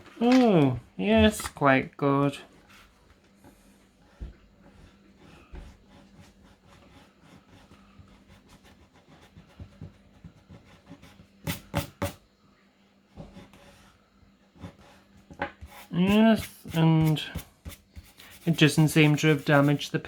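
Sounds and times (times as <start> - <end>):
eraser rubbing on paper: 14.6 - 19.9.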